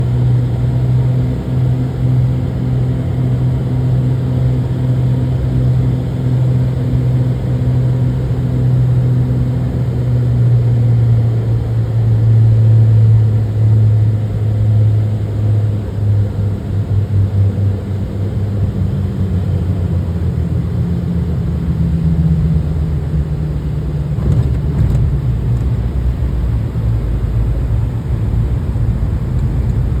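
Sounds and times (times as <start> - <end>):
small airplane engine drone: 0.0 - 30.0
low rumbling: 21.7 - 30.0.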